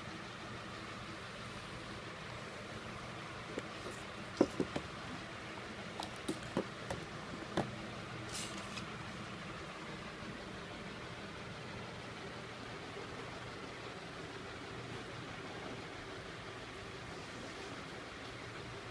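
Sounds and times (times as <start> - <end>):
steady hiss: 0.0 - 18.9.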